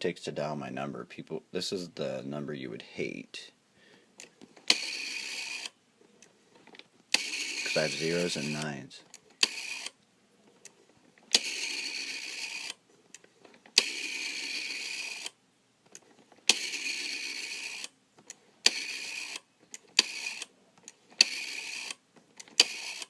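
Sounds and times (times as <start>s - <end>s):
rotary dial whirring back: 4.6s - 5.8s, 7.1s - 8.7s, 9.4s - 10.0s, 10.6s - 12.8s, 13.5s - 15.4s, 16.0s - 17.9s, 18.6s - 23.0s.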